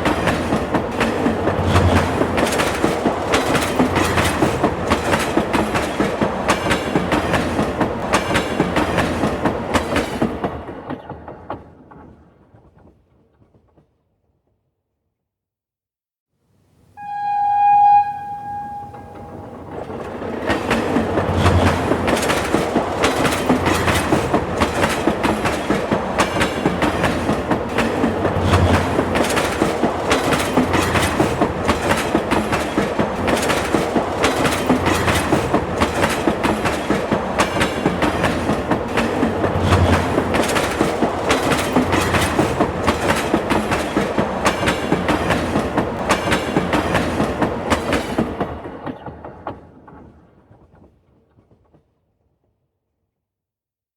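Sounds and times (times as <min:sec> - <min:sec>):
train rumble: 0:00.0 - 0:13.0, 0:17.0 - 0:51.8
train wheels clicking over rail joints: 0:00.0 - 0:13.8, 0:19.7 - 0:51.9
train horn blast: 0:17.0 - 0:19.8.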